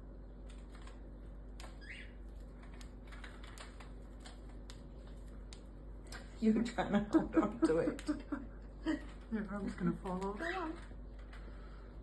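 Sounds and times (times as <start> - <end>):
bird beak cracking seeds: 1.6 - 6.2
bird rising chirp: 1.7 - 2.2.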